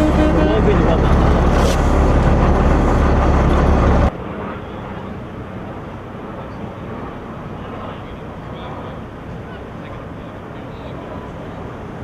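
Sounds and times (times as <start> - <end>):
outdoor background noise: 0.0 - 12.0
street noise: 0.0 - 12.0
vehicle rumble: 0.0 - 12.0.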